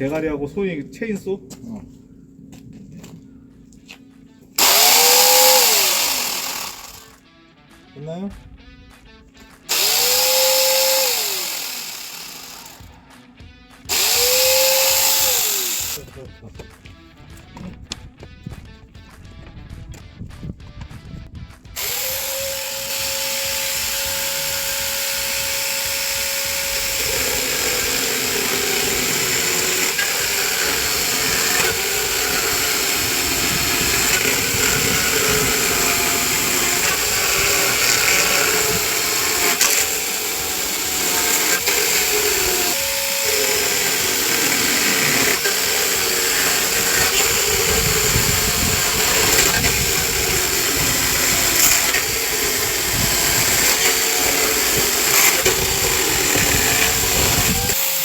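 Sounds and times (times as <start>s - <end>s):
chainsaw cutting wood: 4.6s - 7.2s, 9.7s - 12.9s, 13.9s - 16.0s, 21.8s - 58.0s.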